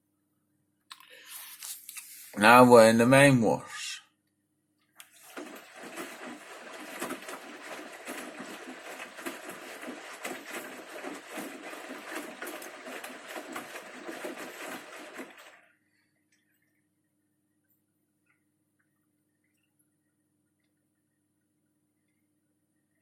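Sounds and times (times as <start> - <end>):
water and clothes sloshing: 5.0 - 15.7
washing machine drum turning: 5.2 - 15.7.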